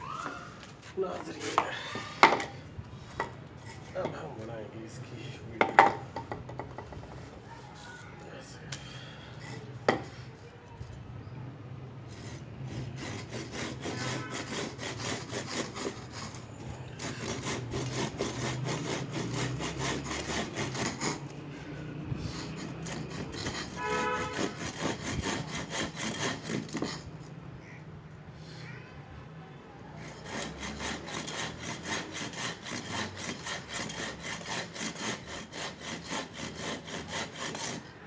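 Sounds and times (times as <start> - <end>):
hand saw cutting wood: 0.1 - 2.5, 3.6 - 4.6, 12.1 - 27.3, 30.0 - 38.0.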